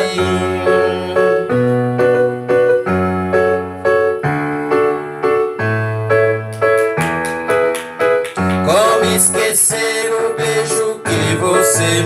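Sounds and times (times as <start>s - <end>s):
electric piano chords: 0.0s - 12.0s
bass line: 11.1s - 12.0s.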